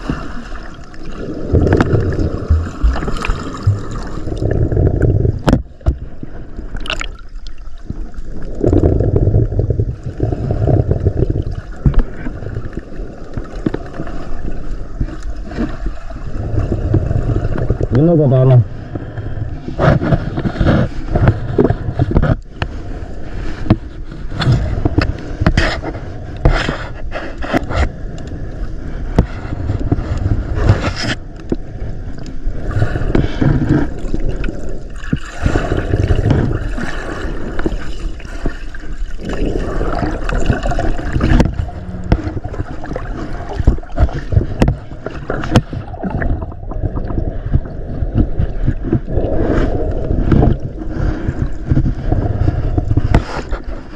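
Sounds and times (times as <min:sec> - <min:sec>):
water sloshing and gurgling: 0:00.0 - 0:53.9
knocks and scrapes on camera: 0:04.6 - 0:06.0, 0:19.7 - 0:22.7, 0:23.6 - 0:27.9, 0:29.1 - 0:31.2, 0:41.2 - 0:42.6, 0:43.6 - 0:53.9.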